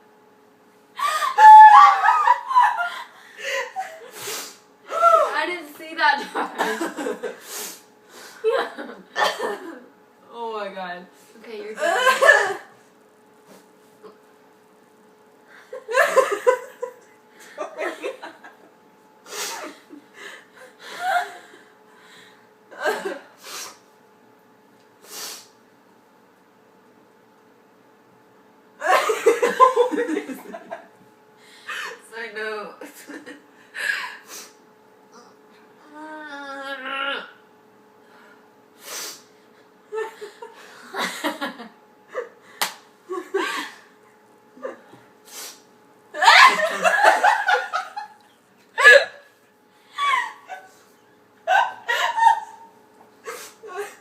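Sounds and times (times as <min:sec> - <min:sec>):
girls giggling: 0:01.0 - 0:04.1, 0:06.2 - 0:07.4, 0:11.8 - 0:12.8, 0:15.7 - 0:18.7, 0:28.8 - 0:30.9, 0:39.9 - 0:42.4, 0:46.2 - 0:49.3, 0:49.9 - 0:54.0
women laughing: 0:01.0 - 0:04.1, 0:06.2 - 0:07.4, 0:08.4 - 0:09.9, 0:11.8 - 0:12.7, 0:15.7 - 0:18.7, 0:19.6 - 0:21.6, 0:28.8 - 0:30.9, 0:39.9 - 0:42.4, 0:43.1 - 0:43.9, 0:46.2 - 0:49.3, 0:49.9 - 0:54.0.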